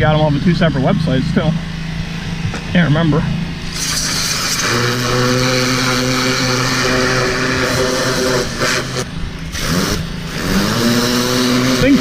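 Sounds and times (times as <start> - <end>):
pressure washer engine droning: 0.0 - 12.0
high-pressure water spray hissing: 3.6 - 12.0.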